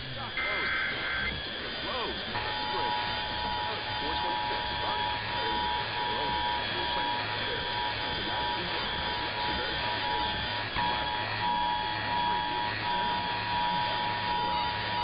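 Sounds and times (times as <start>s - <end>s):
radio hiss: 0.0s - 15.0s.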